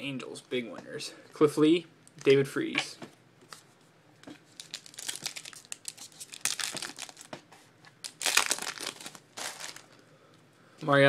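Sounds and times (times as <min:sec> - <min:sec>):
wrapper crinkling and tearing: 0:04.5 - 0:07.3, 0:08.0 - 0:10.0.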